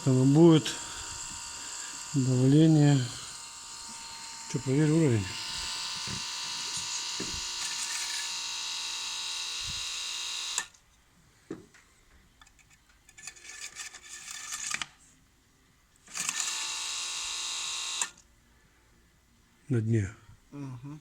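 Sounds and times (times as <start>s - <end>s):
high buzzing motor whine: 0.0s - 10.7s, 16.2s - 18.2s
faint clicks and handling noises: 10.7s - 15.0s.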